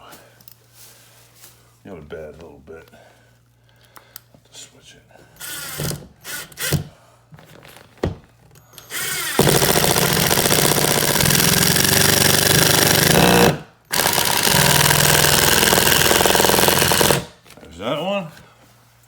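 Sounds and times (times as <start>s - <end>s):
power screwdriver driving screws: 5.4s - 6.9s, 8.8s - 17.3s
rapid hammering: 9.2s - 17.3s.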